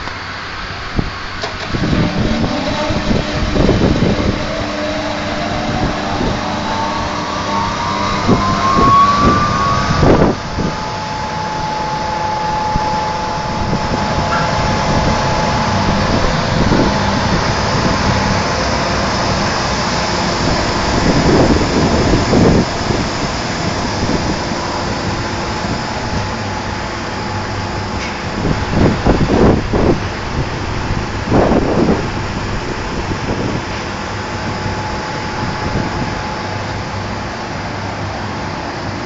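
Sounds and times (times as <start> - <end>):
machinery whine: 0.0 - 39.0
machinery din: 1.4 - 30.2.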